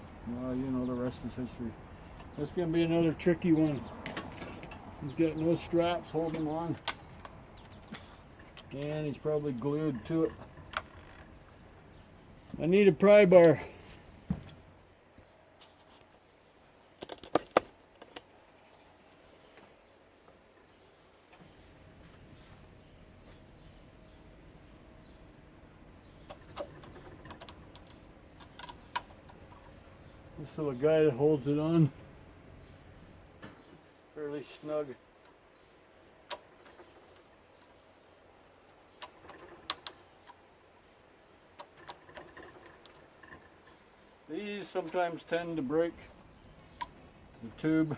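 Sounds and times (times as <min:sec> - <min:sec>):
crickets chirping: 0:00.0 - 0:47.9
hard objects clicking: 0:26.2 - 0:29.8.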